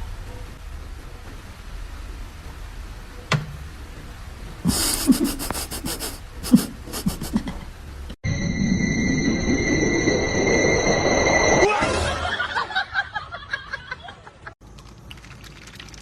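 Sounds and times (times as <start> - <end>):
steady electronic tones: 8.2 - 11.7.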